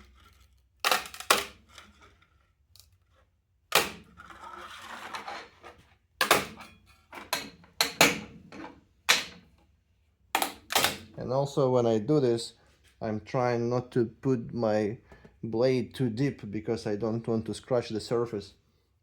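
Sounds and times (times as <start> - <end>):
blade scraping: 4.2 - 5.9.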